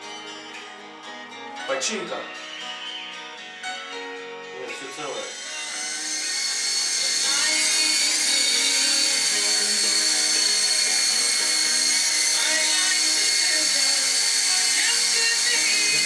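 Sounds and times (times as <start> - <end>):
faint music: 0.0 - 16.0
toy helicopter rotors whirring: 5.0 - 16.0.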